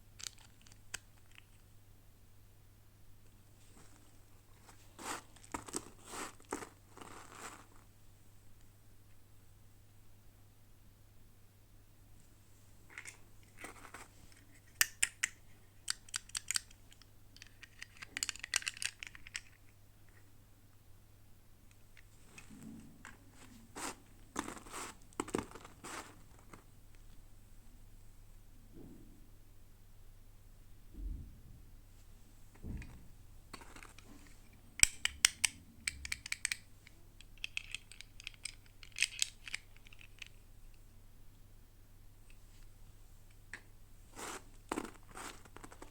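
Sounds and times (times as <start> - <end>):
toy packaging clicking and crinkling: 0.2 - 1.6, 5.0 - 7.7, 12.9 - 19.8, 34.8 - 40.4
packaging rustling: 4.6 - 7.8.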